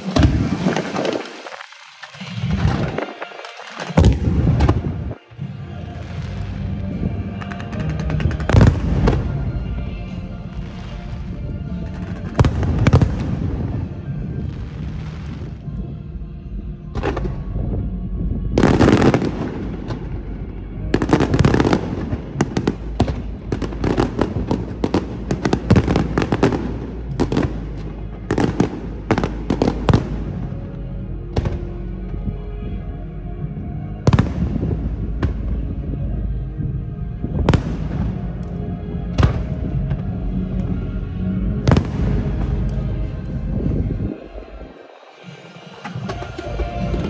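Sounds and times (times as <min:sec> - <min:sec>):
fireworks bangs and crackles: 0:00.0 - 0:16.1, 0:16.9 - 0:32.4, 0:33.4 - 0:47.0
distant fireworks booming: 0:03.9 - 0:05.2, 0:06.0 - 0:15.8, 0:16.9 - 0:30.8, 0:31.4 - 0:31.8, 0:34.1 - 0:36.0, 0:36.6 - 0:40.3, 0:41.4 - 0:44.7.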